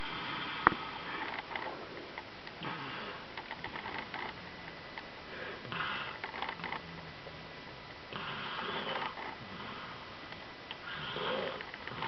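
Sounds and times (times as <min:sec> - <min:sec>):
infant snoring softly: 0:02.6 - 0:04.1, 0:05.3 - 0:07.1, 0:08.1 - 0:10.2, 0:10.8 - 0:12.0.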